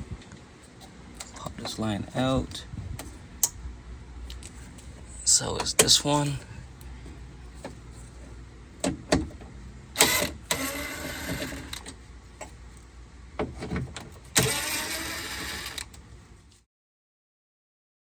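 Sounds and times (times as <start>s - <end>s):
power tool motor running: 10.0s - 11.8s, 14.4s - 15.9s.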